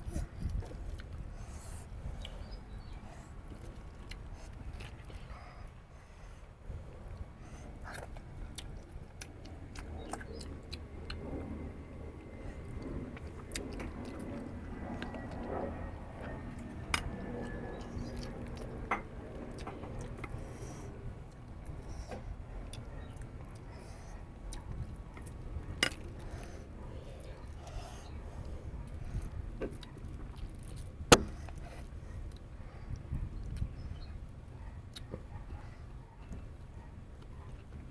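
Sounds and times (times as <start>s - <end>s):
chewing and gnawing on bone: 0.1s - 35.6s.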